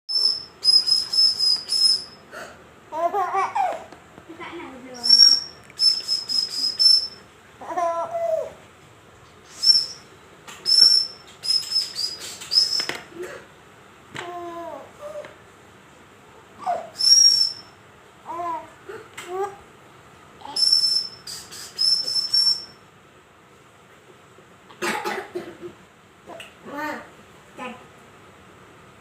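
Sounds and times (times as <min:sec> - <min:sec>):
high-pitched squeaks: 0:00.1 - 0:02.1, 0:05.0 - 0:07.1, 0:17.0 - 0:17.6, 0:20.5 - 0:22.7
baby babbling and giggling: 0:02.9 - 0:04.6, 0:07.6 - 0:08.6, 0:14.2 - 0:15.3, 0:18.3 - 0:19.6.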